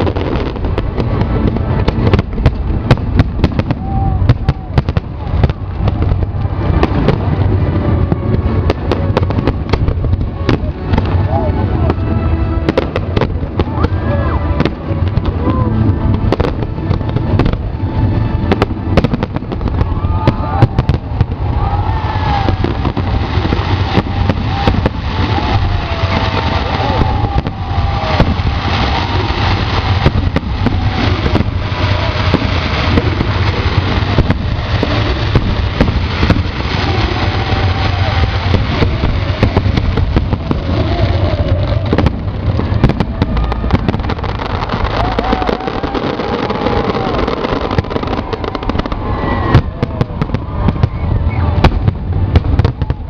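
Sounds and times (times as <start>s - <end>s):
fireworks bangs and crackles: 0.0s - 53.0s
steady low rumble: 0.0s - 53.0s.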